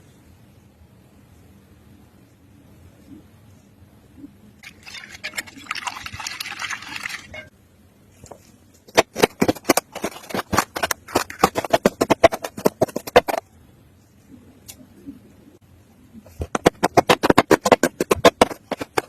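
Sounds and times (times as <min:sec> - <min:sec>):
liquid being poured: 0:04.6 - 0:07.5.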